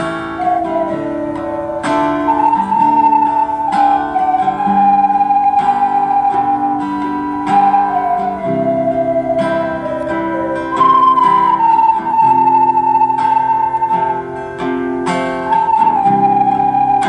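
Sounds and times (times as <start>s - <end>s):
acoustic guitar chords plucked: 0.0s - 17.0s
ocarina melody: 0.0s - 17.0s.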